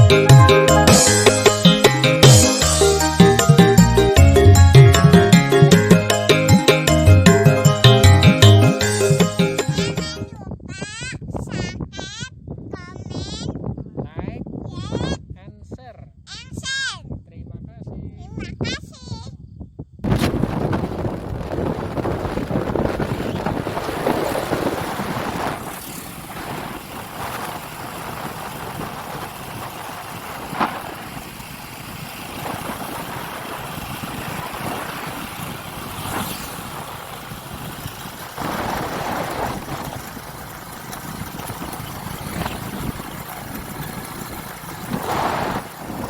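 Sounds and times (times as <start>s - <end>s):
engine running: 0.0s - 10.3s, 20.1s - 46.0s.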